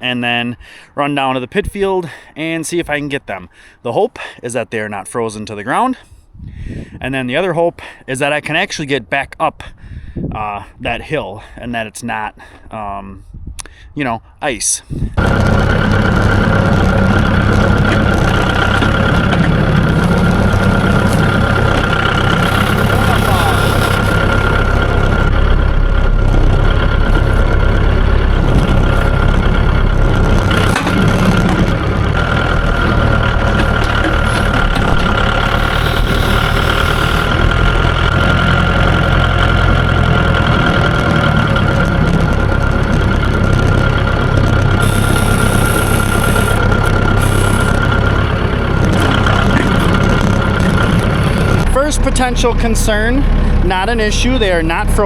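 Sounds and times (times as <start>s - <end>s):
tractor diesel engine running: 15.1s - 55.0s
high whine: 15.2s - 55.0s.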